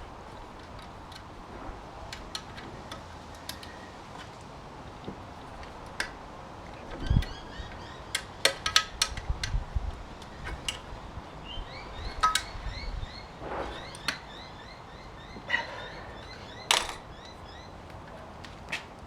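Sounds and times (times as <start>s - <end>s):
clicks and clinks of tools: 2.1s - 4.4s, 8.1s - 9.6s, 12.1s - 12.6s, 16.7s - 17.0s
bird chirps: 11.4s - 17.8s.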